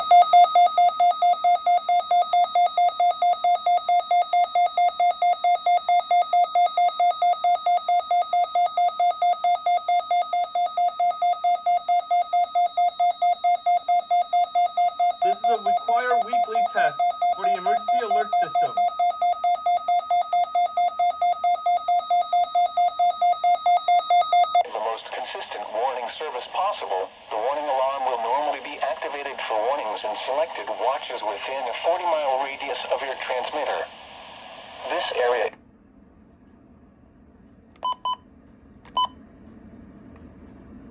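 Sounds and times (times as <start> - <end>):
rapid electronic alert beeps: 0.0 - 34.0
faint voice speaking: 24.6 - 33.9.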